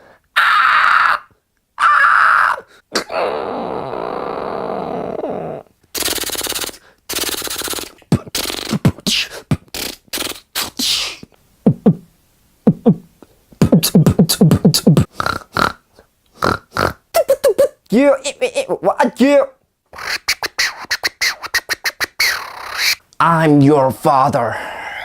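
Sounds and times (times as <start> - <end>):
beatboxing mouth sounds: 5.9 - 17.8, 19.9 - 23.0.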